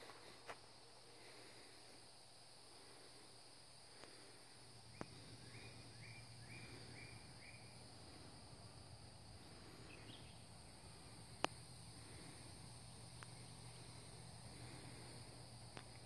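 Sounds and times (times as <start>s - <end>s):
insects trilling: 0.0s - 16.0s.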